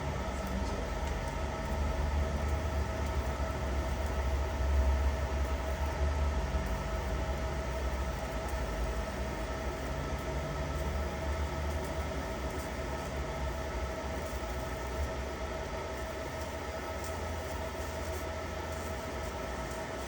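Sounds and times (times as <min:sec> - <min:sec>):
laser engraver humming: 0:00.0 - 0:20.0.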